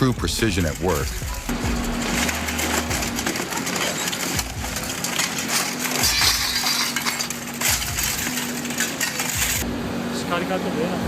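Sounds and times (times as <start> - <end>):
metallic clinking and crackling: 0.8 - 9.6
steady low hum: 1.3 - 3.8
shredder crunching scrap metal: 1.3 - 9.6
dull thump: 1.5 - 3.6.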